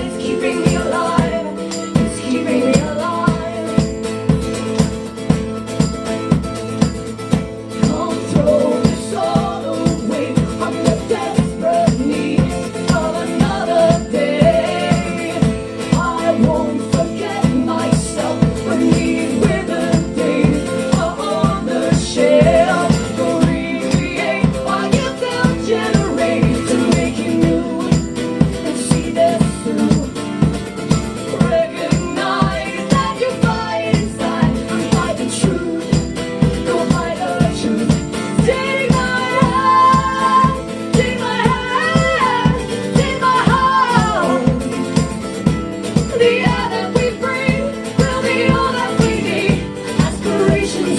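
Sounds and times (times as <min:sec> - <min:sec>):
wordless vocal melody: 0:00.0 - 0:04.4, 0:07.5 - 0:50.9
guitar: 0:00.0 - 0:50.9
tambourine jingles: 0:00.0 - 0:50.9
kick drum beat: 0:03.3 - 0:29.3.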